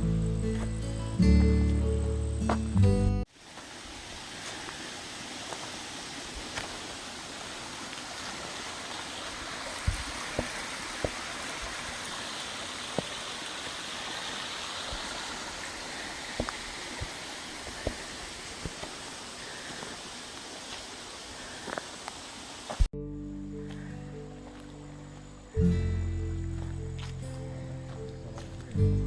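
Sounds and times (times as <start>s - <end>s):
stream rushing: 3.3s - 22.9s.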